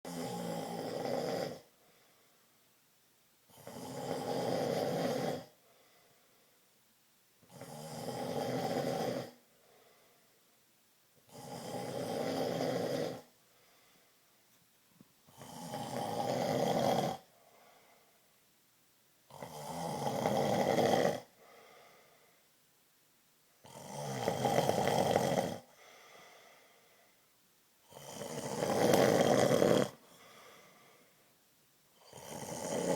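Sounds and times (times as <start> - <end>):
man snoring: 0.1 - 1.7, 3.5 - 5.6, 7.5 - 9.4, 11.3 - 13.3, 15.3 - 17.3, 19.3 - 21.3, 23.6 - 25.7, 27.8 - 30.2, 32.0 - 32.9
faint breaths: 1.6 - 2.8, 5.5 - 6.8, 9.3 - 10.7, 13.2 - 15.5, 17.2 - 18.4, 21.2 - 22.6, 25.6 - 27.4, 28.0 - 32.9.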